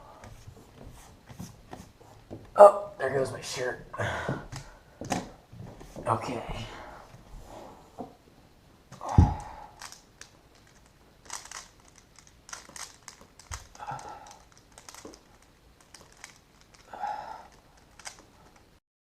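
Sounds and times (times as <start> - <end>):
plastic puzzle cube clicking: 9.8 - 18.6.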